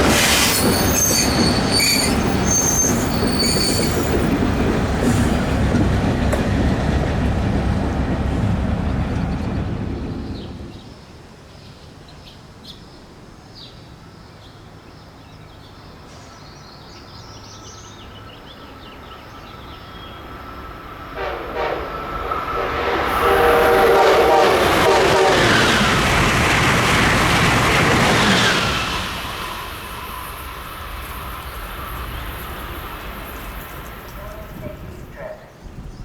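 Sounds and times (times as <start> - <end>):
high-speed train passing: 0.0 - 11.4, 13.9 - 36.0
train horn chord: 21.2 - 25.8.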